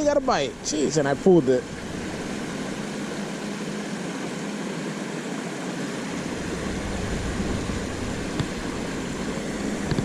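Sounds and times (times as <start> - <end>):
low rumble: 6.1 - 10.0.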